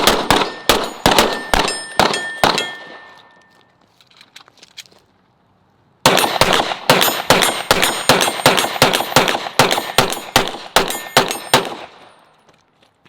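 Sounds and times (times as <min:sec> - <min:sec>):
handgun shots: 0:06.1 - 0:12.0.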